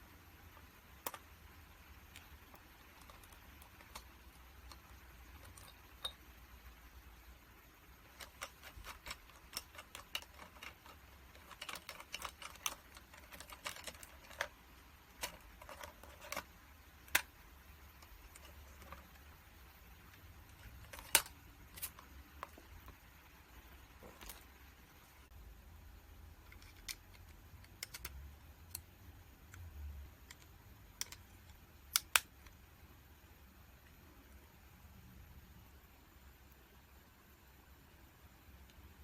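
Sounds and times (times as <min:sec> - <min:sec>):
small plastic clicks and taps: 0:26.5 - 0:28.9, 0:29.5 - 0:32.6.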